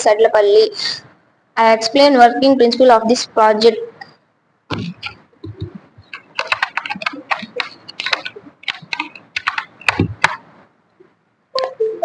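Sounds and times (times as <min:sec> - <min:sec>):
quick irregular clicks and taps: 0:04.7 - 0:10.4
heavier knocks: 0:04.7 - 0:10.5.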